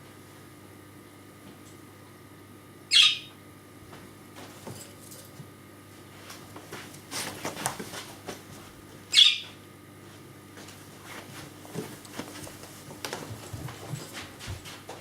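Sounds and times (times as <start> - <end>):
budgerigar shrill screech: 2.9 - 3.3, 9.1 - 9.4.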